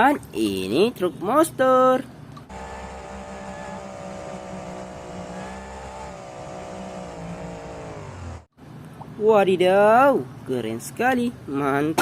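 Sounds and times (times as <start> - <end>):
motor running: 2.5 - 8.5.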